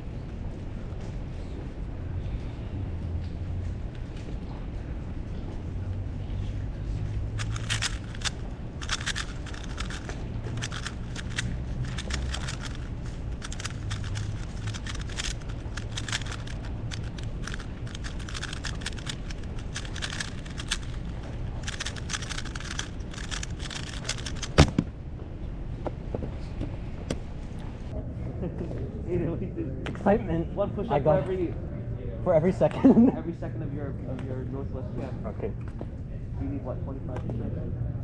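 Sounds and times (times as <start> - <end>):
plastic cube clicking as turned: 7.4 - 24.8.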